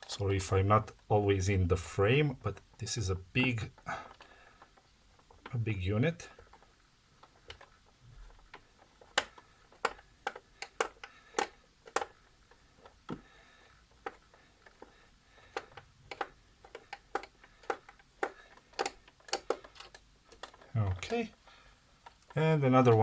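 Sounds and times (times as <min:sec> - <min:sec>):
screwdriver clicking on plastic: 0:06.4 - 0:21.4.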